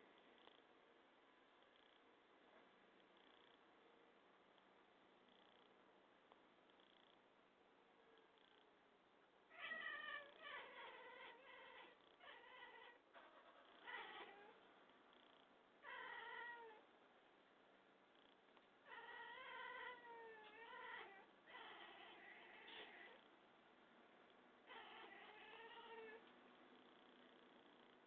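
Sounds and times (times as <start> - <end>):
cat meowing: 9.5 - 13.0, 13.8 - 14.6, 15.8 - 16.8, 18.9 - 23.2, 24.7 - 26.2.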